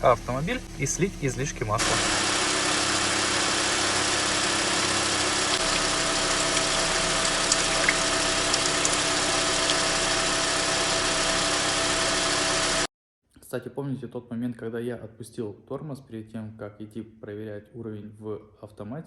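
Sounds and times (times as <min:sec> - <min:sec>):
car engine idling: 0:00.0 - 0:12.9.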